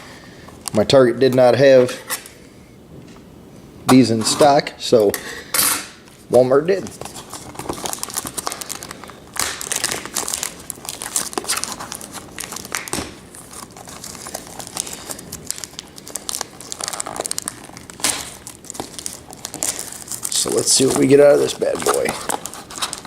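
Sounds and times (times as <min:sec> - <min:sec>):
plastic wrapping crinkling and tearing: 0:06.9 - 0:23.0.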